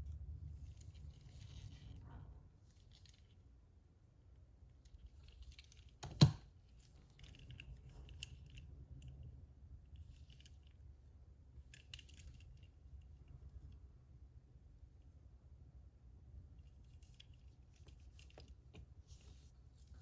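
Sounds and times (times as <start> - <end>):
toy trucks clicking and rustling: 4.8 - 9.3, 9.9 - 10.9, 11.6 - 13.2.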